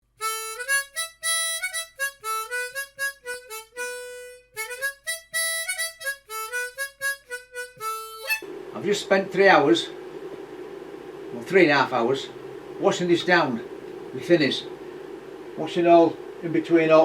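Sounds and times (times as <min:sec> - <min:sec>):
instrument playing fast melody: 0:00.2 - 0:08.4.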